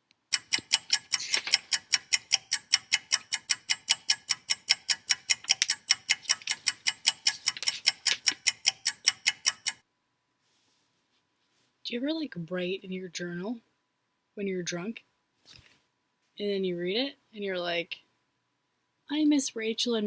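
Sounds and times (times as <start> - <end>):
rapid clock-like ticking: 0.3 - 9.8.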